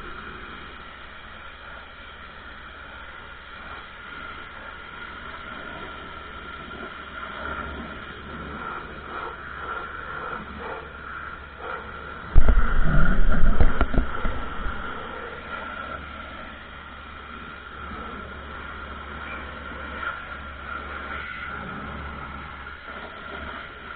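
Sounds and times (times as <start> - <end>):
low rumble with sharp knocks: 12.2 - 15.2.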